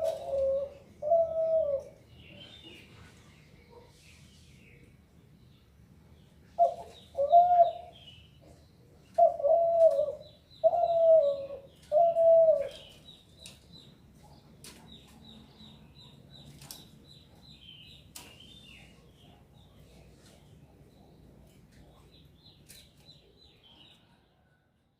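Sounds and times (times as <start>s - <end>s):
dove cooing: 0.0s - 2.0s, 6.6s - 8.0s, 9.1s - 13.0s
small birds chirping: 0.0s - 24.7s.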